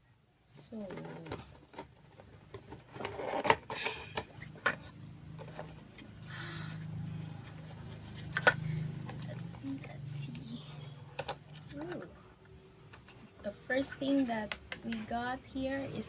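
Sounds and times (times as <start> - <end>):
packaging rustling: 0.9 - 6.1
steady low hum: 2.6 - 16.0.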